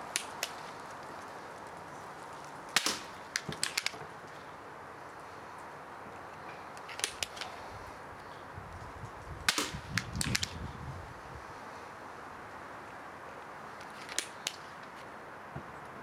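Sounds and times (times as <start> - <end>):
air pistol crack: 0.1 - 0.8, 2.7 - 4.4, 6.8 - 7.6, 9.4 - 10.6, 13.8 - 15.0.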